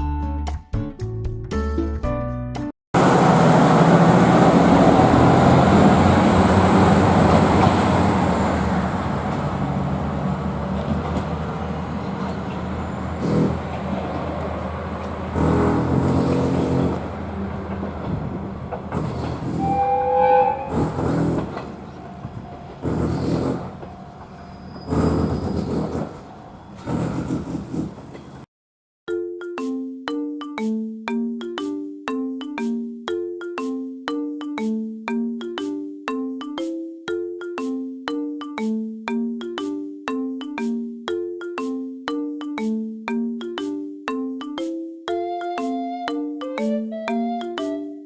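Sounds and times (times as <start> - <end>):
diesel railcar running: 3.0 - 28.5
short high tone: 19.0 - 22.7.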